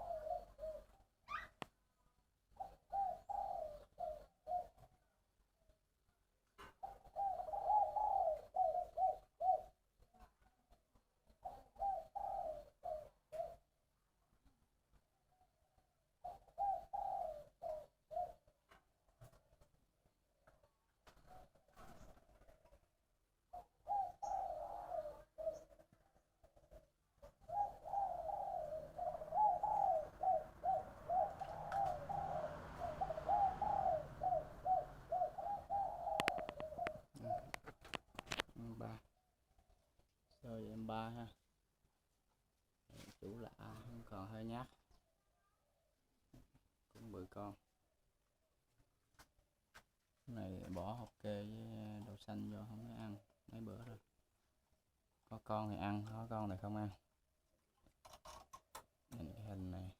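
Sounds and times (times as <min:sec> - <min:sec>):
dove cooing: 0:00.0 - 0:01.6, 0:02.5 - 0:05.1, 0:06.6 - 0:13.8, 0:15.3 - 0:19.7, 0:20.4 - 0:39.0.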